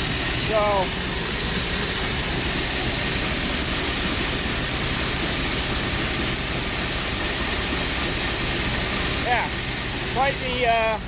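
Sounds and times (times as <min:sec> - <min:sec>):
grain auger carrying corn: 0:00.0 - 0:11.0
grain dryer running: 0:00.0 - 0:11.0
truck engine: 0:00.0 - 0:11.0.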